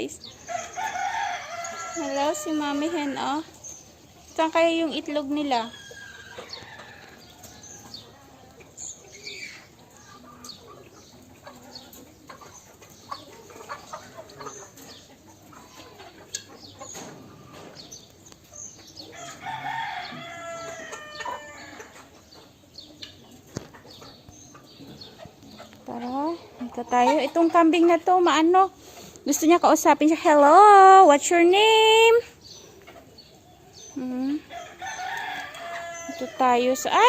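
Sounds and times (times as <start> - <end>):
chickens clucking: 0.0 - 37.0
rooster crowing: 0.5 - 3.0, 19.2 - 21.9, 34.5 - 36.6.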